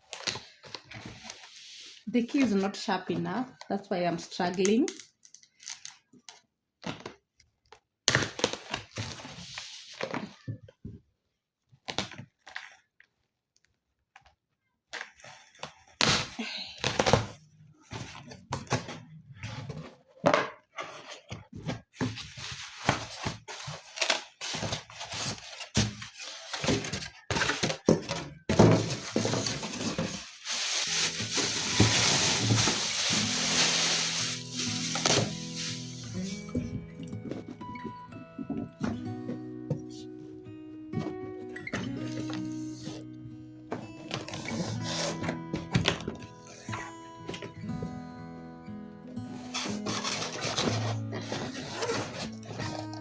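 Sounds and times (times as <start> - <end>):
cardboard rustling: 17.0 - 39.9, 49.4 - 53.0
cardboard packaging tearing: 22.0 - 36.6, 44.2 - 45.3, 49.4 - 53.0.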